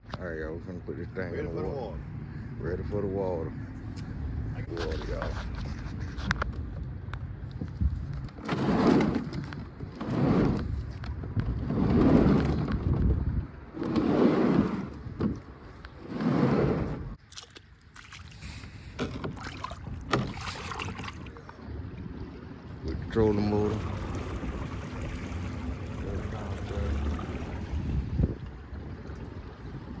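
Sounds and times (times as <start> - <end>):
water swells: 6.8 - 30.0
small knocks on boat: 19.0 - 21.3.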